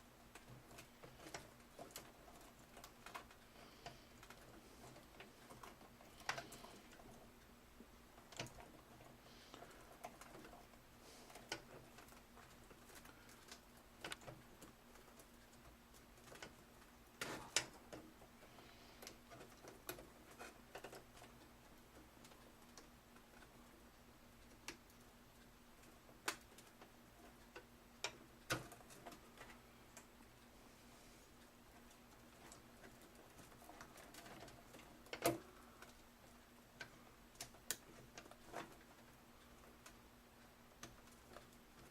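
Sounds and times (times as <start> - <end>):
faint steady hum: 0.0 - 41.9.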